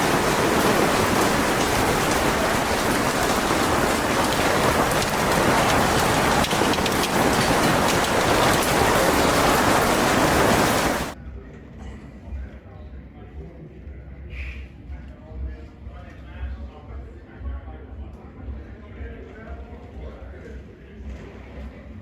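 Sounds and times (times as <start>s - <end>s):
heavy rain: 0.0s - 11.2s.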